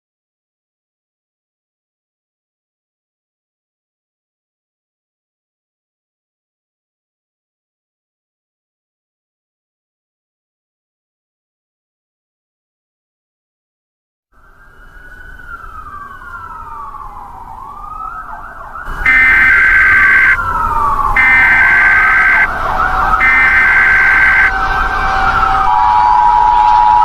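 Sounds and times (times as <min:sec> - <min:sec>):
wailing warning sirens: 0:14.4 - 0:27.0
screeching digital data tones: 0:18.9 - 0:20.4, 0:23.2 - 0:24.6
two-tone attention signal: 0:19.1 - 0:20.4, 0:21.2 - 0:22.5, 0:23.2 - 0:24.5.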